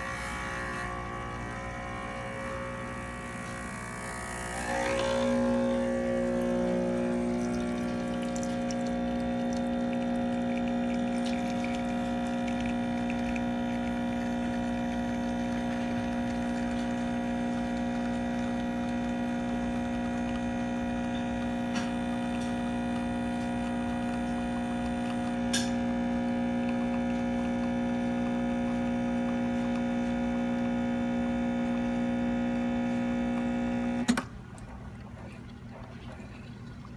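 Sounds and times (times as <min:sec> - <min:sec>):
espresso machine pump buzzing: 0:00.0 - 0:34.4.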